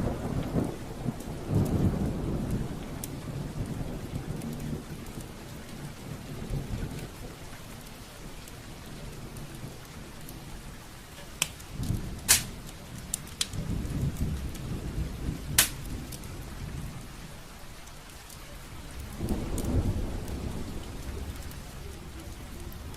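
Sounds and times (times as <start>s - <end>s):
fire crackling pops: 0.0s - 5.3s, 11.1s - 16.4s, 17.8s - 22.9s
low rumble of flames: 0.0s - 22.9s.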